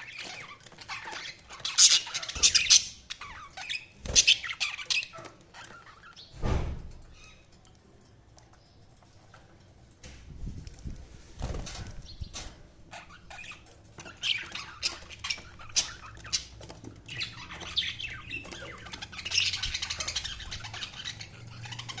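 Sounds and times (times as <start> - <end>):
budgies chirping and squawking: 0.0 - 7.8, 11.4 - 22.0.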